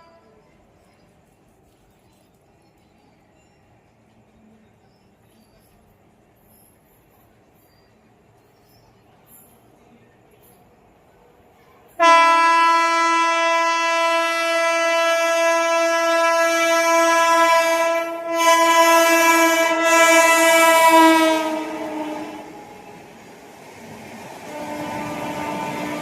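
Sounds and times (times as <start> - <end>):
locomotive horn blast: 12.0 - 22.8, 24.4 - 26.0.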